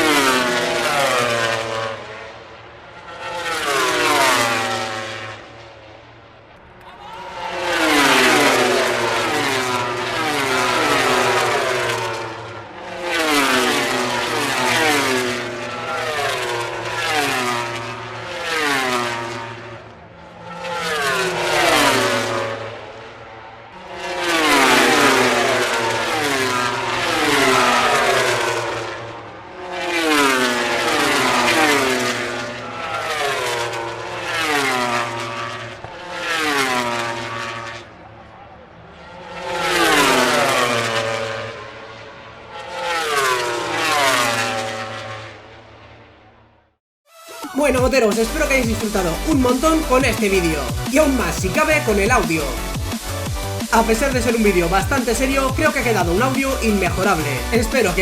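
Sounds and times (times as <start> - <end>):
racing motorcycles passing by: 0.0 - 2.4, 3.0 - 5.5, 7.7 - 19.8, 20.4 - 23.1, 24.2 - 29.1.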